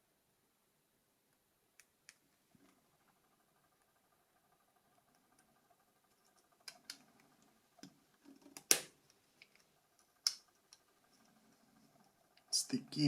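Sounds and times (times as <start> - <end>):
plastic parts clicking and tapping: 5.1 - 12.6.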